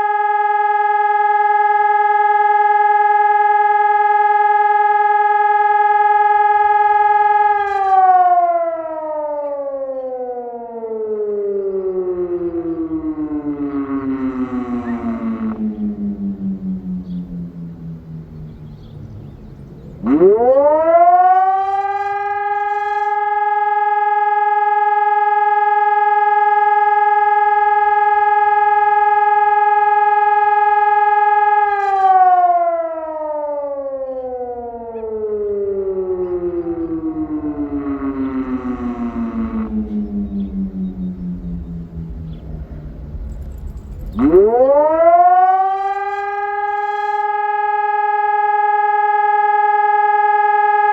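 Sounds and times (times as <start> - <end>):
electronic siren falling pitch: 0.0 - 50.9.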